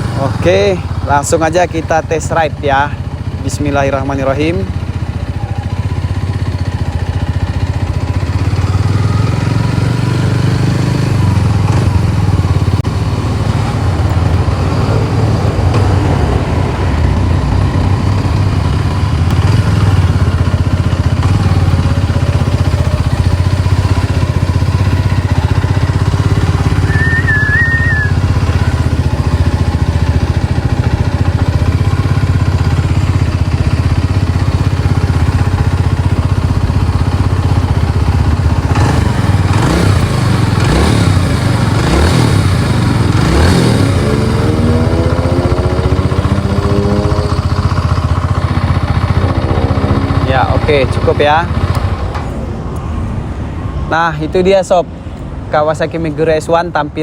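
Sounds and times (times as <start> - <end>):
motorcycle engine running: 0.0 - 53.2
brief high chirp: 26.9 - 28.2.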